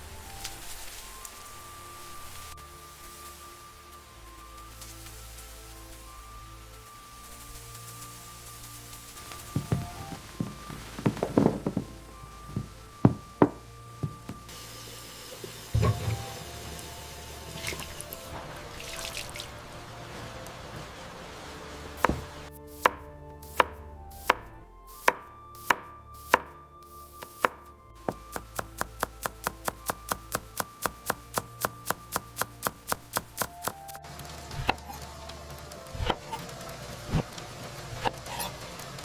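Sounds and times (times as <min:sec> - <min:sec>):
knife chopping on cutting board: 0:09.6 - 0:14.4, 0:22.0 - 0:24.4, 0:25.0 - 0:26.5, 0:27.2 - 0:34.0.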